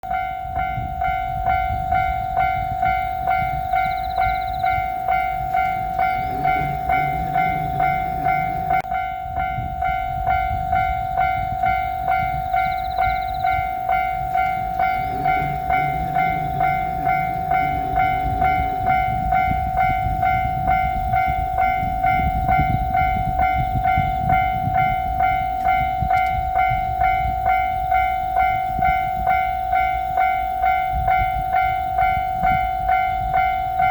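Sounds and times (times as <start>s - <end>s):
level crossing warning bell ringing: 0.0s - 33.9s.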